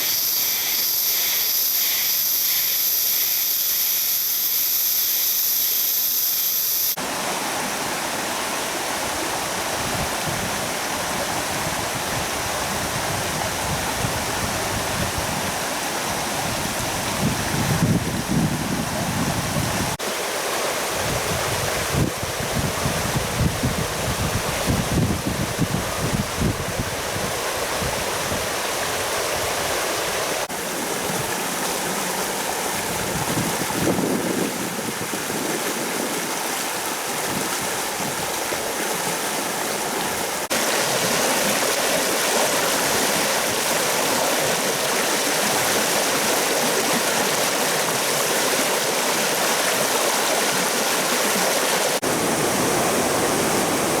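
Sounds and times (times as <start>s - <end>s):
river rapids rushing: 35.6s - 54.0s.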